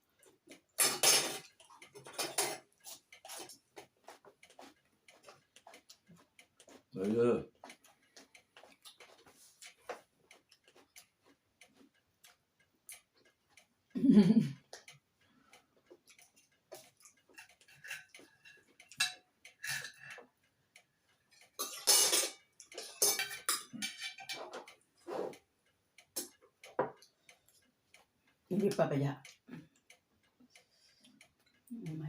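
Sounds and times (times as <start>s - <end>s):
cutlery on plates: 0.7s - 3.9s, 16.3s - 20.2s, 21.4s - 25.4s
chewing: 1.4s - 13.7s, 14.6s - 28.1s.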